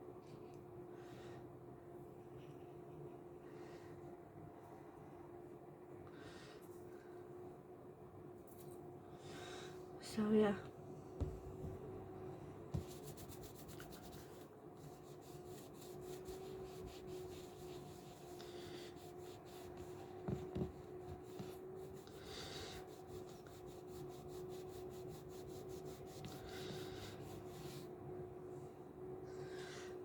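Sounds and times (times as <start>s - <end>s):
steady low hum: 0.1s - 30.0s
quick rubbing strokes: 12.8s - 20.0s.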